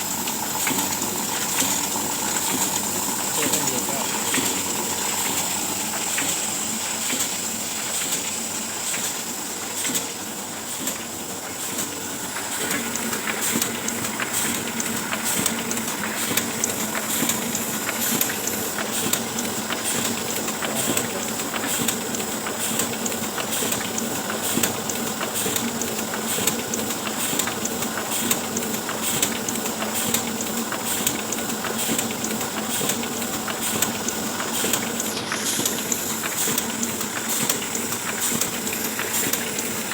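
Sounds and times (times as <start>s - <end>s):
printing press hiss and whir: 0.0s - 39.9s
printing press sheet clacks: 0.0s - 39.9s.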